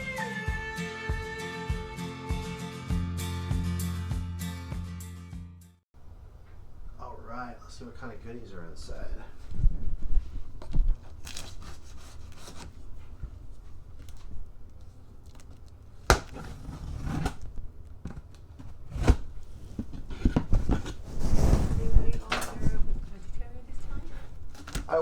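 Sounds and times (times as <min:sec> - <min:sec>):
packaging tearing and rustling: 0:10.5 - 0:21.3.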